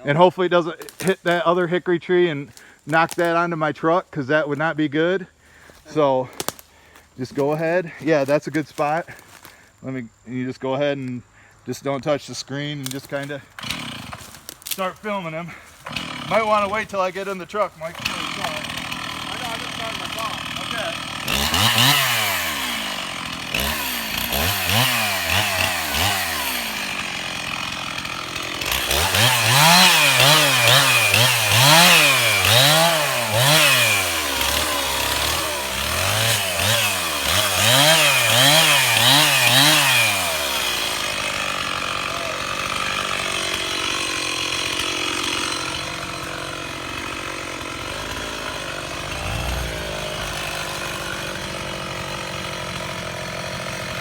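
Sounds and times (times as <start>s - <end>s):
chainsaw revving: 12.8s - 54.0s.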